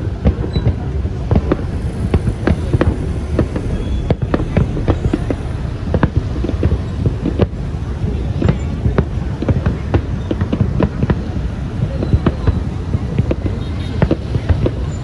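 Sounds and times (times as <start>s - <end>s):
low rumble: 0.0s - 10.2s
fireworks bangs: 0.0s - 15.0s.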